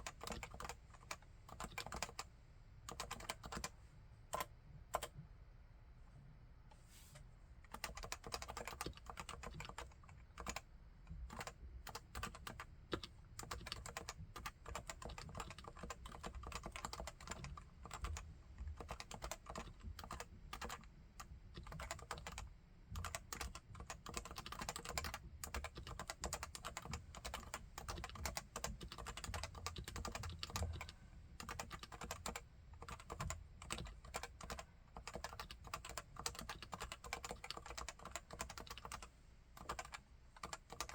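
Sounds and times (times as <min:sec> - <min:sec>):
fast typing on keyboard: 0:00.0 - 0:02.3, 0:02.9 - 0:03.7, 0:04.4 - 0:05.1, 0:07.7 - 0:20.9, 0:21.5 - 0:40.9.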